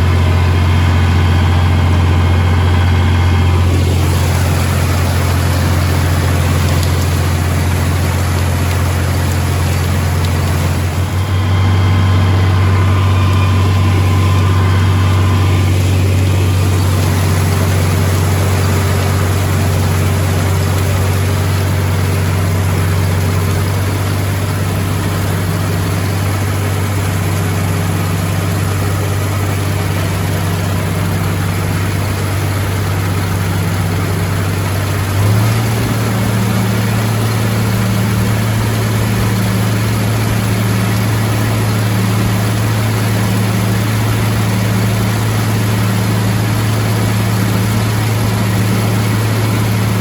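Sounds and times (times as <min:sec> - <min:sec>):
corn picker mechanical noise: 0:00.0 - 0:50.0
tractor engine running: 0:00.0 - 0:50.0.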